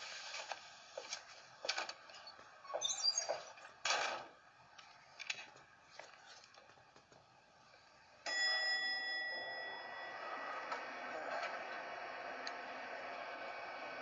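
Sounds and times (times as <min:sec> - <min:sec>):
bell-like chime ringing: 0:08.3 - 0:10.7.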